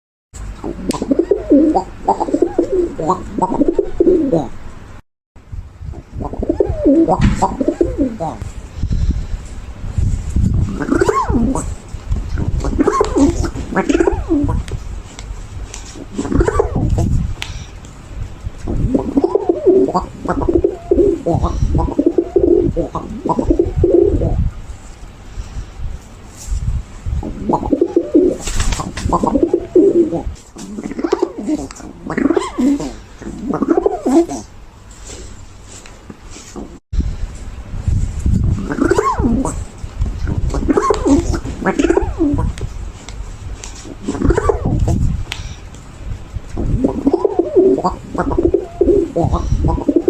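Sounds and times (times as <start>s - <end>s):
pigeon cooing: 0.6s - 4.6s, 6.2s - 8.4s, 10.6s - 11.8s, 12.4s - 14.7s, 15.9s - 17.8s, 18.7s - 24.4s, 27.2s - 34.5s, 38.5s - 42.6s, 43.8s - 45.7s, 46.6s - 50.0s.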